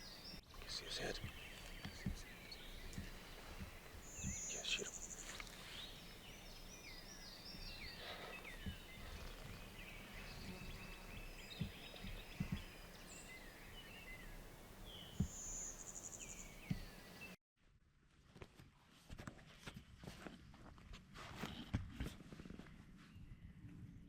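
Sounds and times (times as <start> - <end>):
songbirds chirping and whistling: 0.0 - 17.4
soft low thumps: 1.0 - 17.0.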